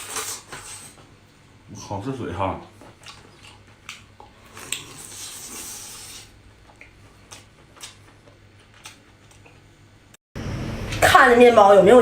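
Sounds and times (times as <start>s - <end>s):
wet chewing smacks: 2.8s - 5.1s
hissing slurp: 4.6s - 6.4s.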